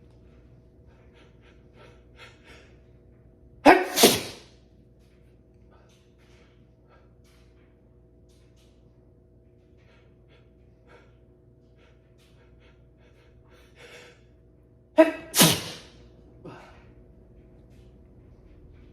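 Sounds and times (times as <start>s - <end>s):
person sneezing: 3.6s - 4.5s, 15.0s - 16.6s.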